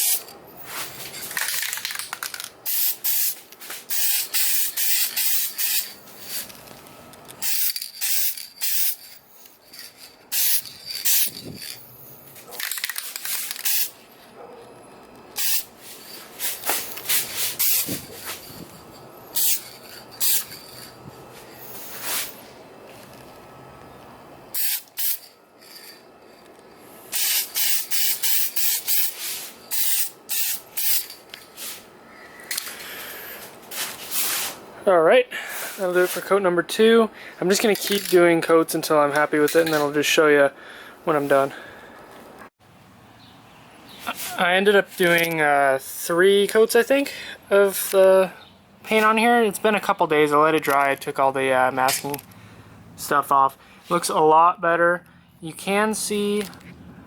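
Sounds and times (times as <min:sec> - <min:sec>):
aerosol can spraying: 0:02.7 - 0:05.9, 0:24.6 - 0:25.3, 0:27.2 - 0:31.0.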